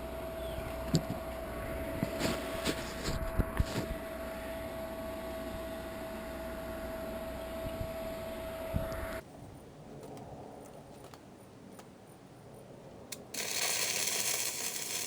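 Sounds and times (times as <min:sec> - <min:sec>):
machine hum: 0:00.0 - 0:09.2, 0:13.4 - 0:15.0
constant hiss: 0:00.0 - 0:15.0.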